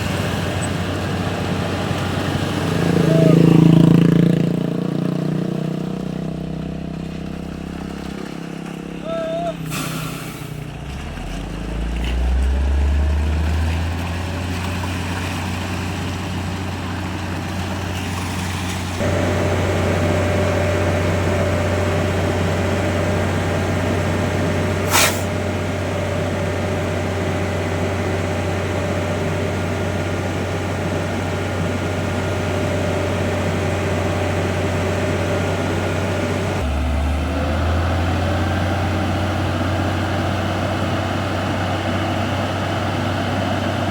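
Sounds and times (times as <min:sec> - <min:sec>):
diesel truck engine running: 0:00.0 - 0:43.9
air hiss burst: 0:09.7 - 0:10.6, 0:24.9 - 0:25.4.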